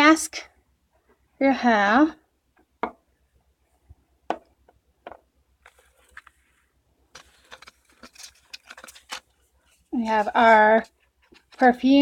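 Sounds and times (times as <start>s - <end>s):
packaging rustling and crinkling: 5.6s - 11.8s.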